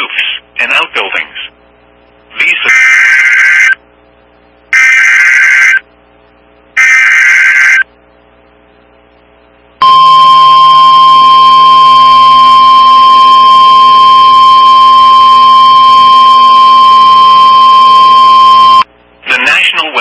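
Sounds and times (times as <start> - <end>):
screechy digital data bursts: 2.6 - 3.8, 4.8 - 5.9, 6.8 - 7.9
steady warning alarm tone: 4.8 - 5.9, 6.8 - 7.9, 9.8 - 18.9.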